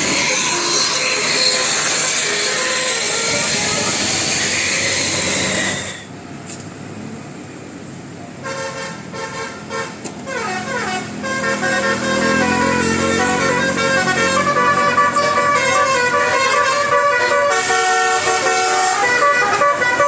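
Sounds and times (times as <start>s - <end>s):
musical air horn: 0.4s - 6.1s, 8.4s - 20.0s.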